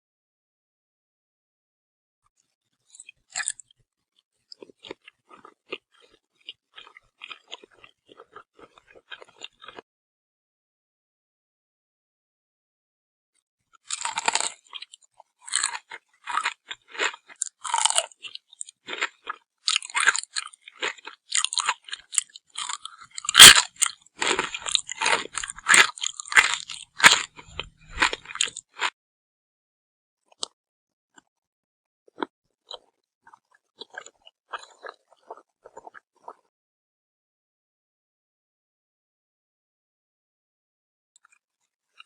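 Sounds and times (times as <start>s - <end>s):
crunchy chewing: 2.4s - 9.8s, 13.7s - 29.0s, 32.1s - 36.5s.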